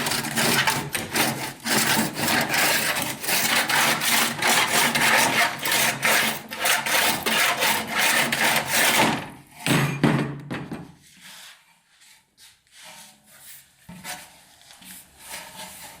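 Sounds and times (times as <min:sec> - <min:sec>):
hand tool scraping: 0:00.0 - 0:09.3, 0:12.7 - 0:16.0.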